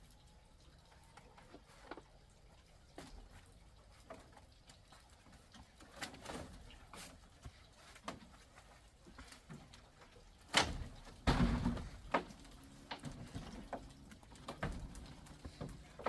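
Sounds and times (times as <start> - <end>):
knocks and thuds: 10.5 - 12.4.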